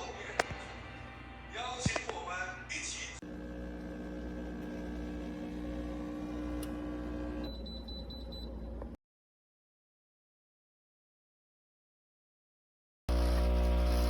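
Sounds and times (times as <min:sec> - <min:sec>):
electric appliance humming: 0:03.2 - 0:07.6, 0:13.1 - 0:14.0.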